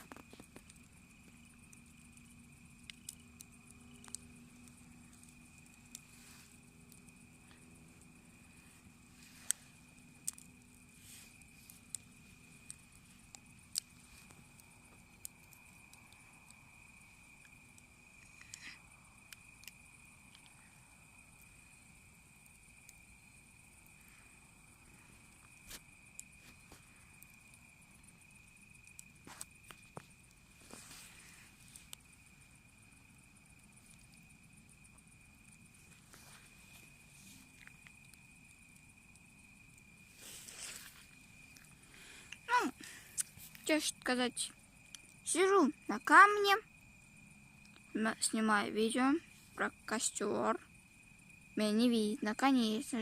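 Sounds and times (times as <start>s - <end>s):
sharp clicks and pops: 0.0s - 6.1s, 9.4s - 16.6s, 17.4s - 20.6s, 28.3s - 32.1s
cricket trilling: 0.0s - 53.0s.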